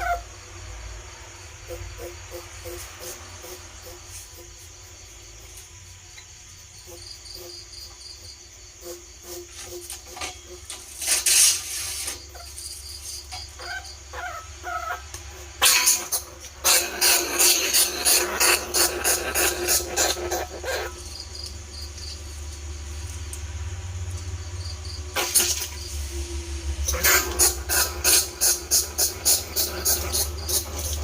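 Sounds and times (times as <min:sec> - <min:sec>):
rat squeaking: 0:00.0 - 0:00.4, 0:01.6 - 0:04.7, 0:06.8 - 0:22.5, 0:26.8 - 0:31.0
steady low hum: 0:00.0 - 0:31.0.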